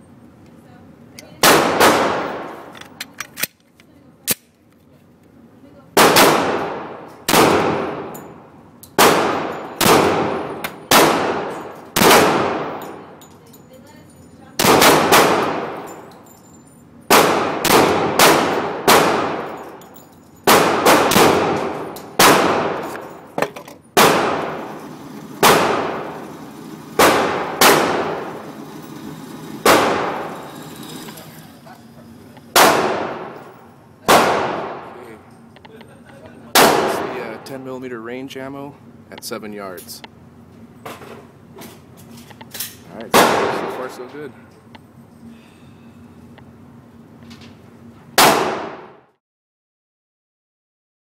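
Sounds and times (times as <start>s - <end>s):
pistol shots with ringing echo: 1.4s - 2.7s, 6.0s - 8.4s, 9.0s - 13.2s, 14.6s - 16.1s, 17.1s - 23.3s, 24.0s - 24.8s, 25.4s - 26.4s, 27.0s - 28.5s, 29.6s - 30.4s, 32.5s - 35.0s, 36.5s - 37.4s, 43.1s - 44.0s, 48.2s - 49.1s.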